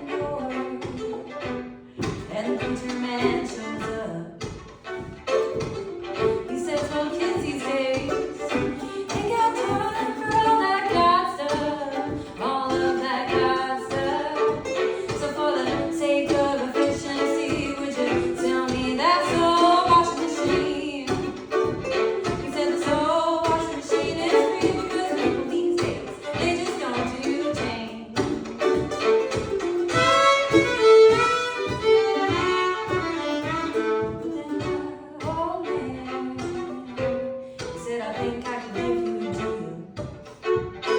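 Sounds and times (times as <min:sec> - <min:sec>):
plucked string instrument: 0:00.0 - 0:40.9
person singing: 0:06.4 - 0:28.8.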